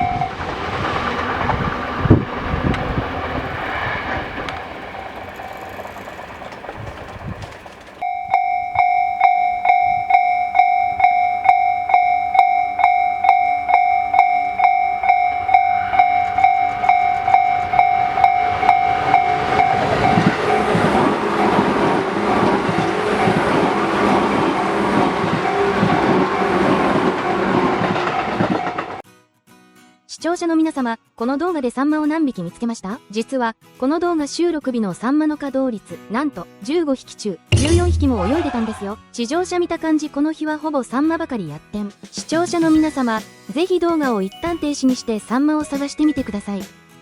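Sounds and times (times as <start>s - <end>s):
level-crossing alarm ringing: 0.0s - 0.5s, 8.0s - 29.0s
train wheels clattering over joints: 0.0s - 29.0s.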